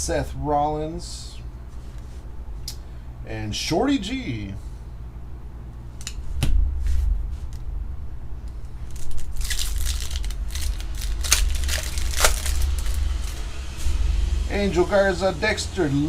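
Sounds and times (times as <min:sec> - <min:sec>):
steady low hum: 0:00.0 - 0:16.0
foil wrapper tearing and crinkling: 0:08.8 - 0:13.4.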